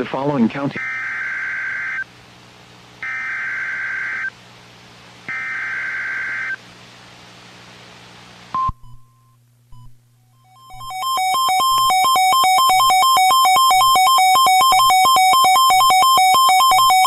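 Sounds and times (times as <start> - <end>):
radio hiss: 0.0 - 1.0.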